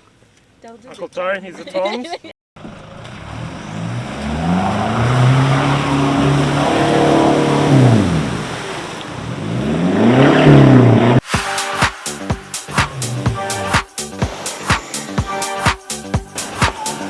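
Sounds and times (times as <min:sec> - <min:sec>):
vehicle engine revving: 0:02.6 - 0:11.3, 0:12.4 - 0:15.4.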